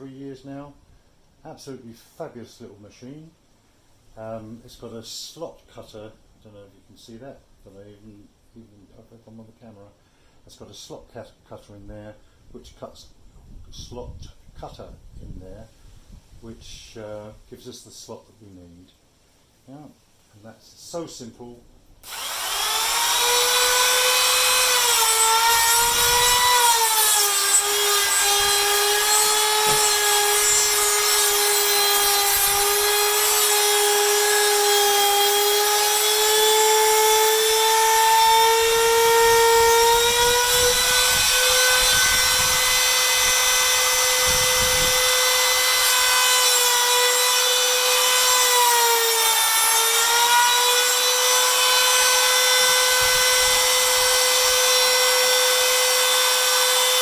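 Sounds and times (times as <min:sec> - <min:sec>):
router cutting timber: 0:22.0 - 0:57.0.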